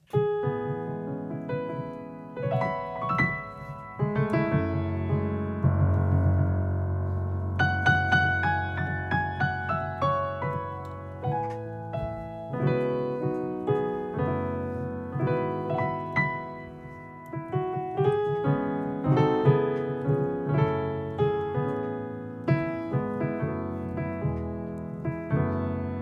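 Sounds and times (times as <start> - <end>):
piano chords and melody: 0.0 - 26.0.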